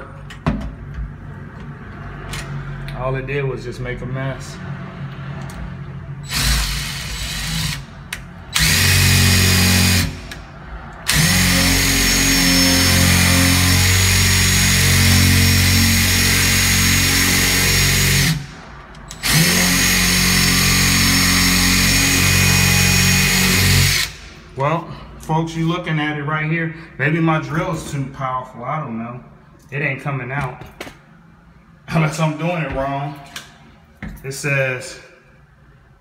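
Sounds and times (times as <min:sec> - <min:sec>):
power drill spinning: 0:06.2 - 0:07.9, 0:08.5 - 0:10.4, 0:11.0 - 0:18.5, 0:19.1 - 0:24.2.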